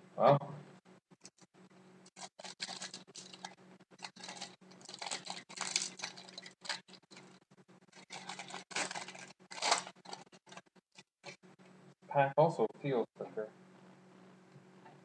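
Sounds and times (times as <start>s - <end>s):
card pack wrapper crinkling: 2.1s - 10.6s.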